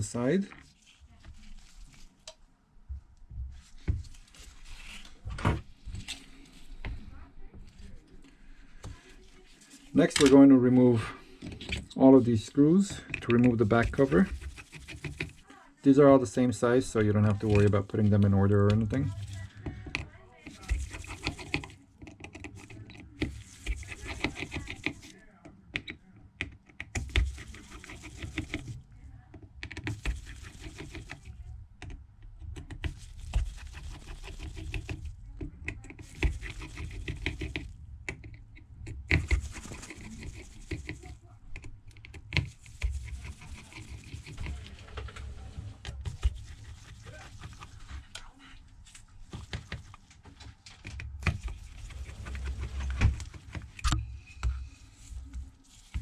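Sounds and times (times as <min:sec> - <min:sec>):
screwdriver clicking and scraping: 0:11.4 - 0:15.4, 0:17.2 - 0:25.1, 0:25.7 - 0:48.3.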